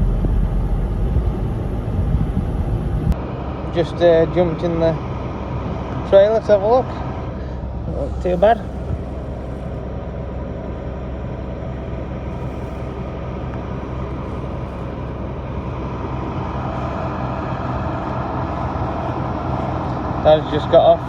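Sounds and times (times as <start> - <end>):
diesel engine droning: 0.0 - 21.0.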